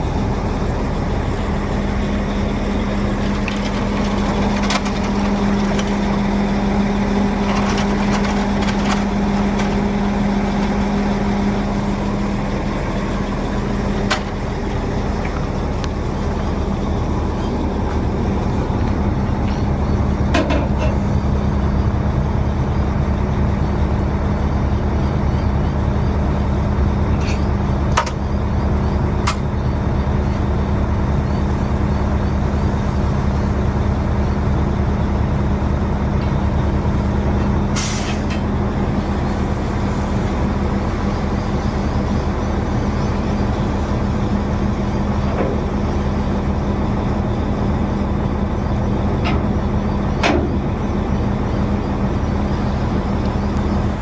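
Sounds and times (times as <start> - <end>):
heavy truck engine running: 0.0 - 54.0
air brake hiss: 37.8 - 38.4.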